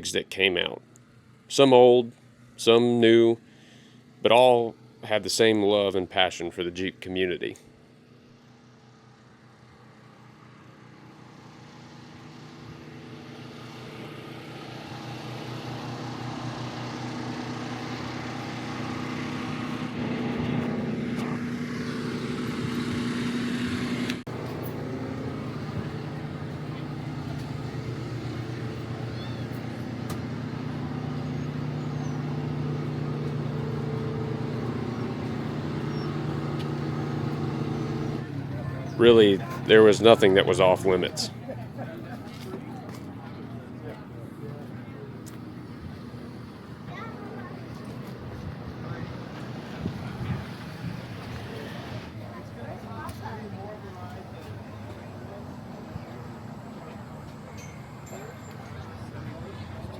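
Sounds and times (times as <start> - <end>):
car engines running: 0.0 - 59.9.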